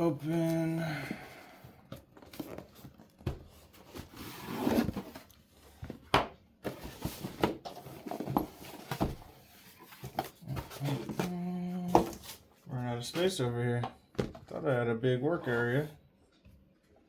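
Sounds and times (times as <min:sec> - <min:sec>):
cardboard packaging rustling and tearing: 0:01.9 - 0:06.0, 0:06.6 - 0:12.5.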